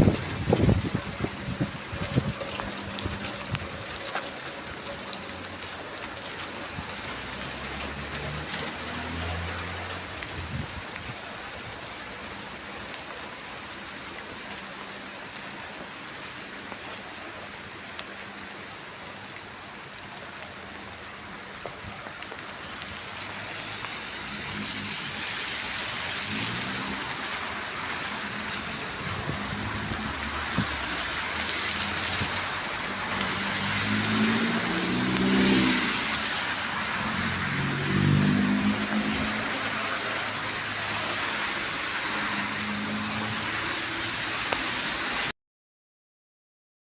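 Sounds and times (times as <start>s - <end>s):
steady rain: 0.0s - 45.3s.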